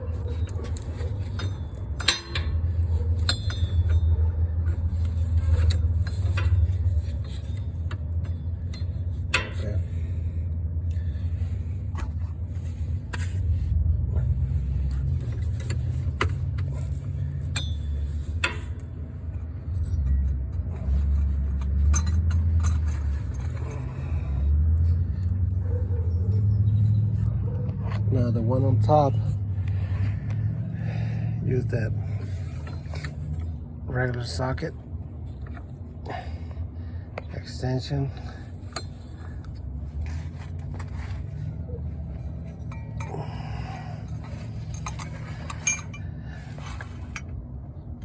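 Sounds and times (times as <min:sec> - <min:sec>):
hand tools clinking against metal: 0:00.0 - 0:09.9, 0:15.0 - 0:24.4, 0:38.1 - 0:47.4.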